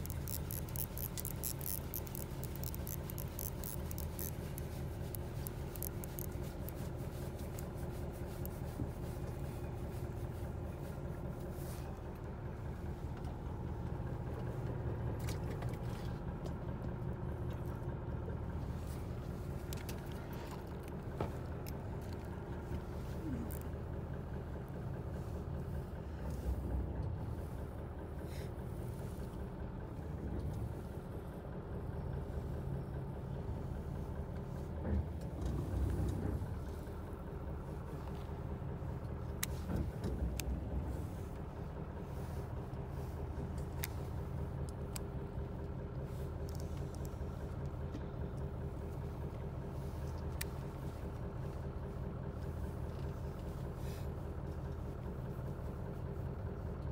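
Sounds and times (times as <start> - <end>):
sharp clicks: 0.0 - 7.7
boat engine running: 0.0 - 56.9.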